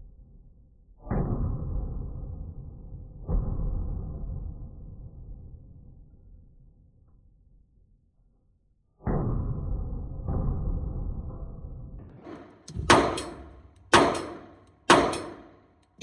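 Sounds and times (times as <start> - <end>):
pistol shots with ringing tail: 12.8 - 15.6.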